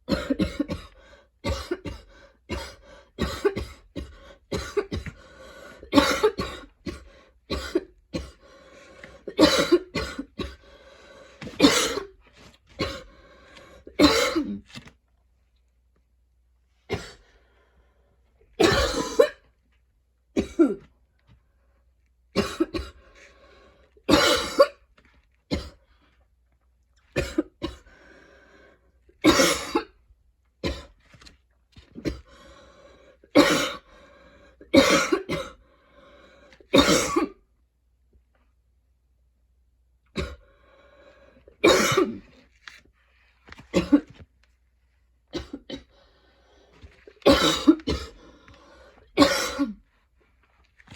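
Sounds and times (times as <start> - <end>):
woman coughing: 0.0 - 5.1, 5.9 - 8.4, 9.3 - 10.6, 11.6 - 12.1, 14.0 - 14.6, 18.6 - 19.5, 20.4 - 20.9, 22.4 - 23.0, 24.1 - 24.8, 27.2 - 27.9, 29.2 - 29.9, 33.4 - 33.8, 34.7 - 35.6, 36.7 - 37.4, 40.2 - 40.4, 41.6 - 42.2, 43.7 - 44.1, 45.3 - 45.9, 47.2 - 48.2, 49.2 - 49.8.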